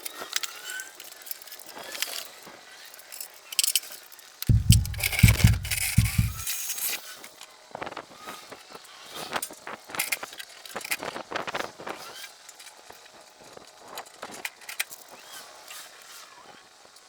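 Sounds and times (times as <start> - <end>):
hard objects clattering: 4.5 - 6.4
scraping: 4.5 - 6.4.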